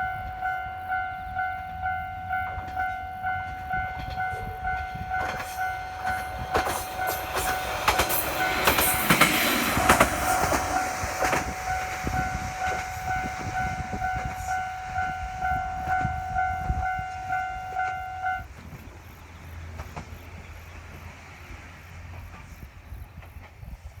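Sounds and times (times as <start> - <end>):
level crossing alarm ringing: 0.0 - 18.5
train low rumble: 0.0 - 24.0
train wheels clickety-clack: 2.4 - 24.0.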